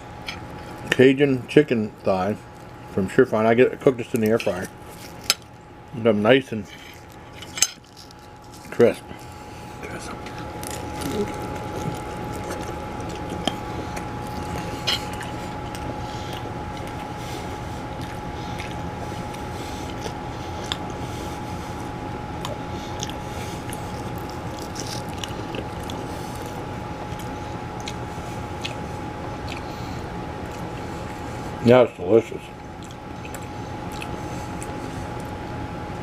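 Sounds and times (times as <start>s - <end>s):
background hum: 0.0s - 36.0s
person chewing crisp food: 4.2s - 5.6s, 6.6s - 21.8s, 22.4s - 31.3s, 32.7s - 35.4s.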